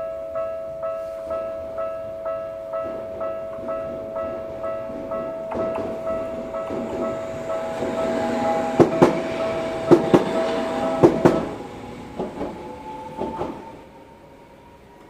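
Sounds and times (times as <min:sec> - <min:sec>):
level crossing alarm ringing: 0:00.0 - 0:15.0
tram wheels clacking over rail joints: 0:02.7 - 0:14.0.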